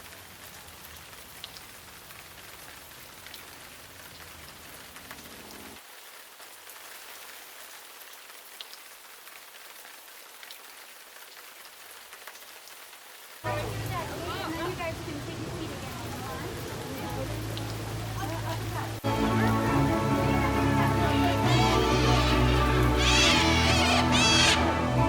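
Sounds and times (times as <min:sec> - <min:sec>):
falling water hiss: 0:13.4 - 0:25.0.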